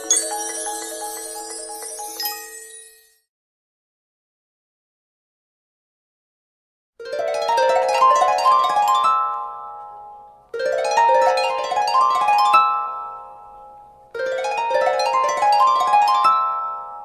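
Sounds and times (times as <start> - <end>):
phone ringtone: 0.0 - 3.0.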